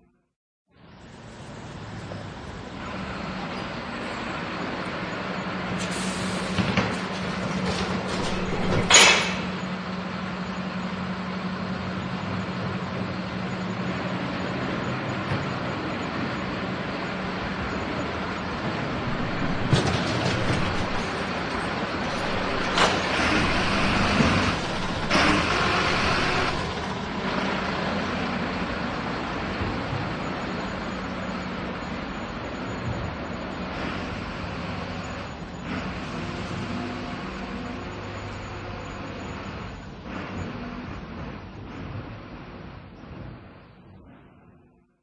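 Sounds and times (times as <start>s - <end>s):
garbage truck engine hum: 0.8s - 44.9s
metal clanks: 6.8s - 9.7s, 19.0s - 26.7s.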